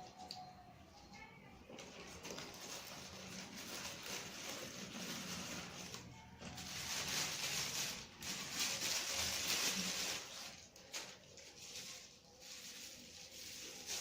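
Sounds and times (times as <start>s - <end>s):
packaging rustling: 1.7s - 14.0s.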